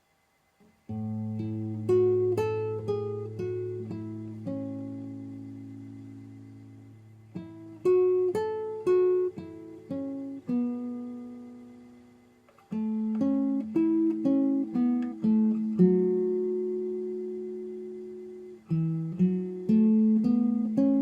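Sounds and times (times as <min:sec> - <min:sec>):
plucked acoustic guitar melody: 0:00.9 - 0:21.0.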